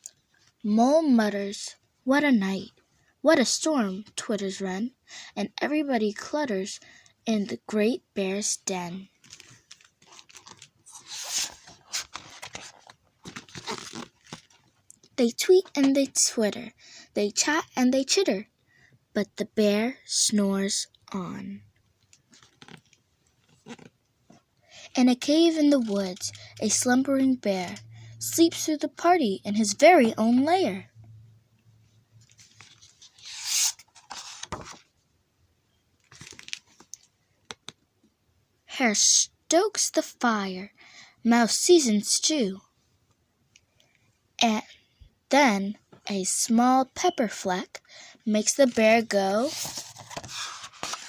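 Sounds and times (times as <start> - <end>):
paper pages rustling: 9.2 - 14.7, 22.2 - 24.0, 32.2 - 34.9, 36.0 - 37.8, 48.6 - 51.0.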